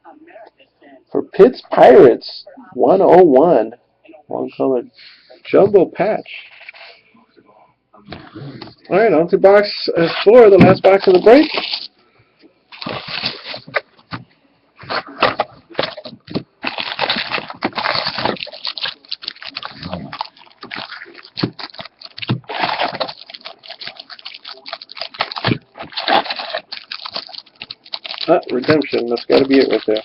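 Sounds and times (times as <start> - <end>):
cardboard box crinkling and tearing: 10.9 - 11.9, 12.7 - 13.8, 14.9 - 30.0.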